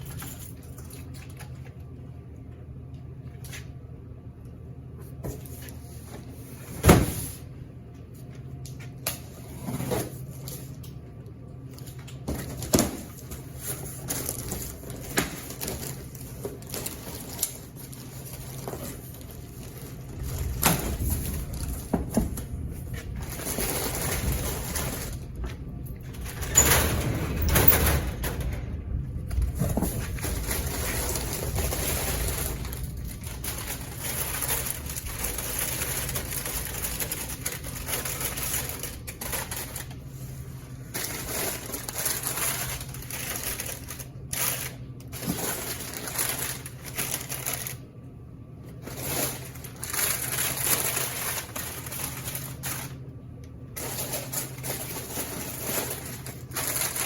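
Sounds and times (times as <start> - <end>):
steady low hum: 0.0 - 57.0
plastic snack packets crinkling: 11.8 - 21.9, 29.4 - 40.0, 40.9 - 48.0, 48.7 - 53.0, 53.7 - 57.0.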